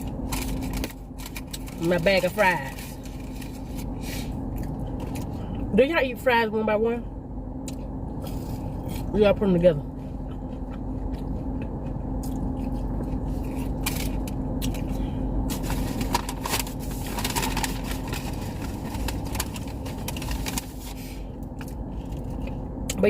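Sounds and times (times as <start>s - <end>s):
paper bag crinkling: 0.0s - 4.2s, 15.5s - 21.0s
steady low hum: 0.0s - 23.0s.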